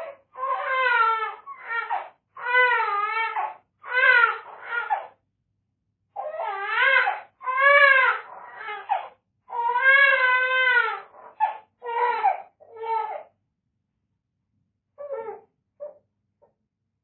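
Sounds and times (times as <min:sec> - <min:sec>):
baby crying: 0:00.0 - 0:05.2, 0:06.2 - 0:13.3, 0:15.0 - 0:16.0.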